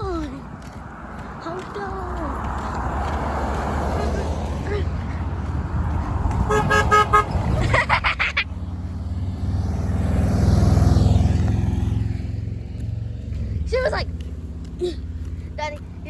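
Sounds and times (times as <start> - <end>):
passing vehicle engine: 0.0 - 16.0
car horn short toots: 6.5 - 7.4.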